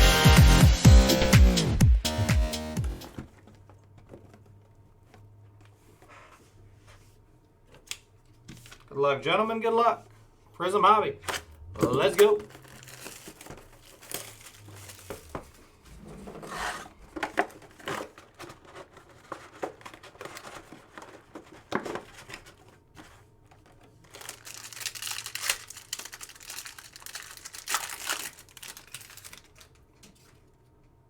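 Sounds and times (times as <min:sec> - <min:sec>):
cards clicking and rustling: 0:11.2 - 0:15.6, 0:16.4 - 0:30.5
plastic wrappers crinkling and tearing: 0:11.4 - 0:15.7, 0:17.0 - 0:30.4.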